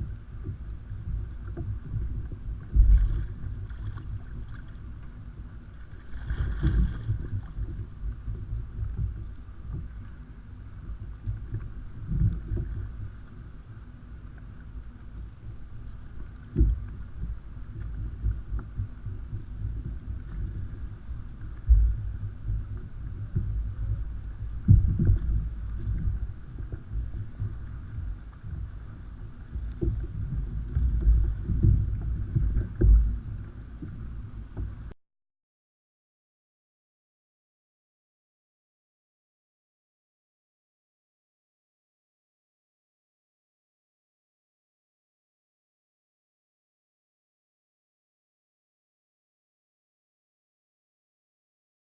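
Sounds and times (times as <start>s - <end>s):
muffled low rumble: 0.0s - 35.0s
wind and water buffeting kayak: 0.0s - 35.0s.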